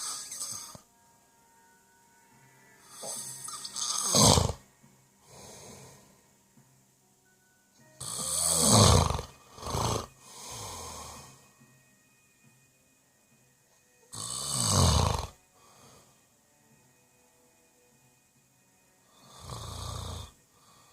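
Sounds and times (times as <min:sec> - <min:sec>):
loud snoring: 0:00.0 - 0:00.8, 0:02.8 - 0:06.0, 0:08.0 - 0:11.4, 0:14.1 - 0:16.0, 0:19.1 - 0:20.9
soft breaths: 0:02.8 - 0:06.7, 0:07.8 - 0:11.7, 0:15.3 - 0:16.4, 0:19.1 - 0:20.9.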